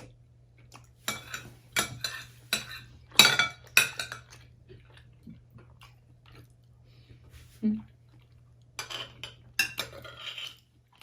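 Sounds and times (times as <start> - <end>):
spoons clinking against bowls: 1.1 - 4.4, 8.8 - 10.6.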